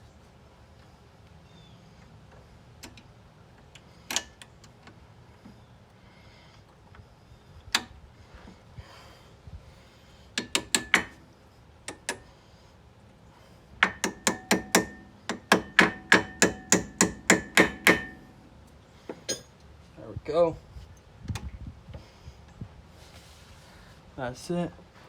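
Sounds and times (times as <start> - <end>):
hammer tapping metal pin: 10.4 - 11.2, 13.8 - 18.4, 19.1 - 19.5.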